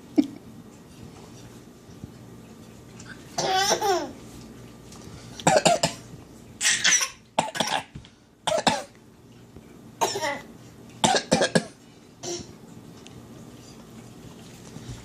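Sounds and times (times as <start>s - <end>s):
child fake coughing: 5.5s - 6.0s, 6.6s - 7.9s, 8.5s - 8.9s, 10.0s - 10.5s, 11.1s - 12.5s.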